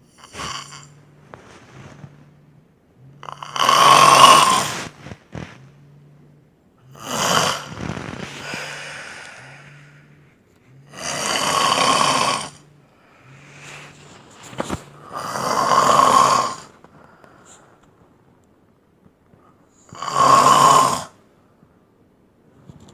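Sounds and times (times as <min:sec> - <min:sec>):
man snoring loudly: 0:00.0 - 0:01.0, 0:03.0 - 0:05.0, 0:06.8 - 0:10.2, 0:10.8 - 0:14.0, 0:15.0 - 0:16.7, 0:19.9 - 0:21.2.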